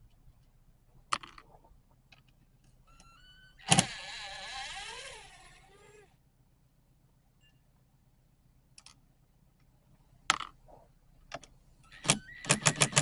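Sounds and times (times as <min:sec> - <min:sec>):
power driver whining: 0:02.9 - 0:06.2.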